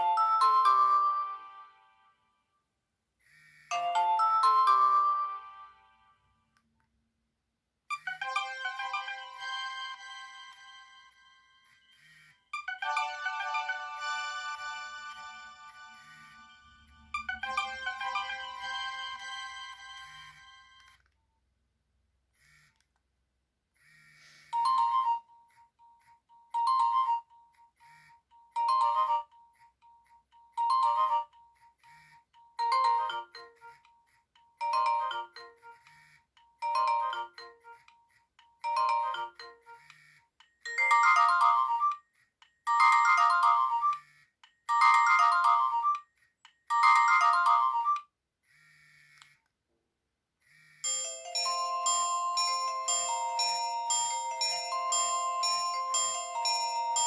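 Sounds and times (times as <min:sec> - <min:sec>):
mobile phone ringtone melody: 0:00.0 - 0:02.1, 0:03.7 - 0:06.2, 0:07.9 - 0:21.0, 0:24.6 - 0:25.4, 0:26.3 - 0:27.5, 0:28.3 - 0:29.5, 0:30.3 - 0:31.5, 0:32.5 - 0:33.9, 0:34.6 - 0:35.8, 0:36.6 - 0:37.8, 0:38.6 - 0:39.9, 0:40.7 - 0:42.0, 0:42.7 - 0:44.1, 0:44.7 - 0:46.1, 0:46.7 - 0:48.1, 0:50.8 - 0:57.0.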